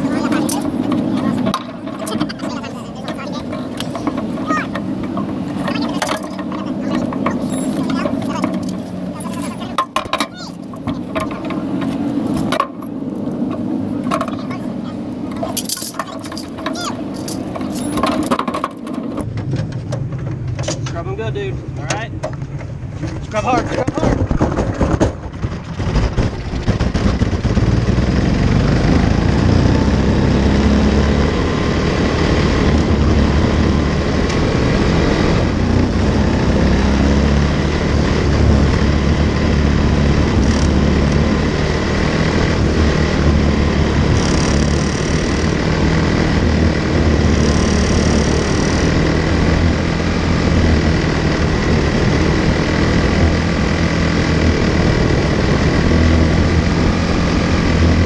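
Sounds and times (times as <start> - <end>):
race car engine running: 0.0 - 58.0.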